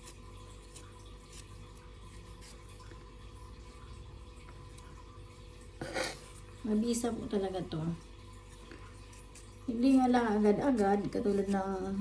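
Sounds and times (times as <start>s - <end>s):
ginger root scraping: 0.0s - 3.1s.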